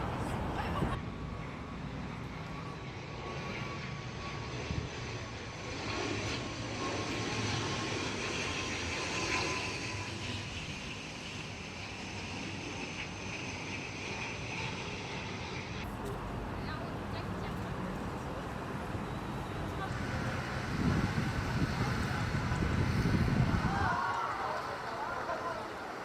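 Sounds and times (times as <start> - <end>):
vehicle engine drone: 14.9 - 26.0.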